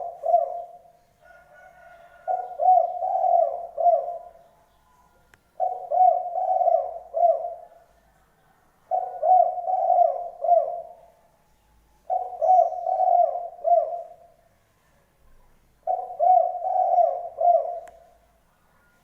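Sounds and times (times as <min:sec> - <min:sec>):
dove cooing: 0:00.0 - 0:04.5, 0:05.6 - 0:07.9, 0:08.9 - 0:11.1, 0:12.0 - 0:14.4, 0:15.8 - 0:18.2.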